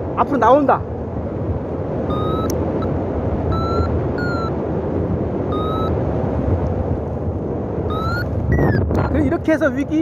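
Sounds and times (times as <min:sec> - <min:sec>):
strong wind on microphone: 0:00.0 - 0:10.0
variometer beeps rising in pitch: 0:02.1 - 0:02.6, 0:03.5 - 0:04.6, 0:05.5 - 0:06.0, 0:07.9 - 0:08.8.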